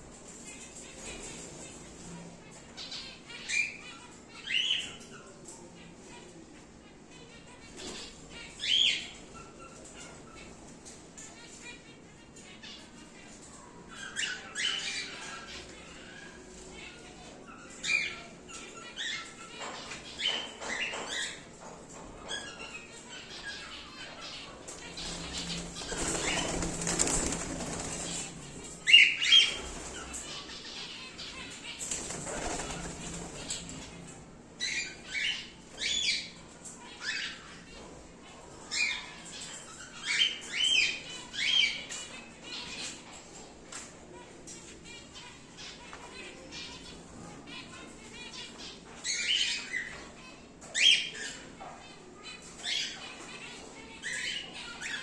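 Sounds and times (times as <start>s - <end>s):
birds flapping wings: 25.0s - 28.4s, 31.9s - 33.5s.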